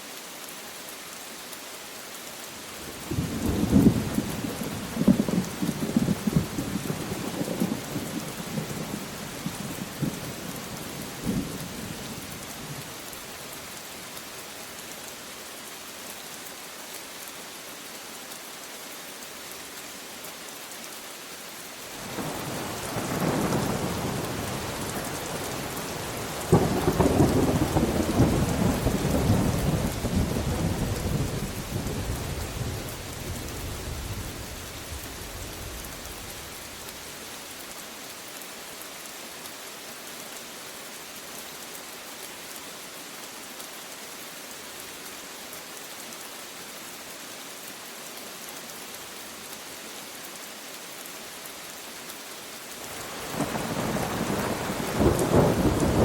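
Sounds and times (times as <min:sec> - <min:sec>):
steady rain: 0:00.0 - 0:56.0
thunderclap rumbling: 0:53.2 - 0:56.0.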